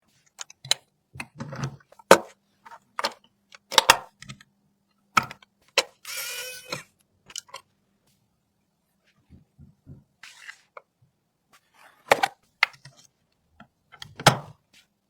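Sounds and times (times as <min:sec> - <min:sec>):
rasping scrape: 0:06.1 - 0:06.8.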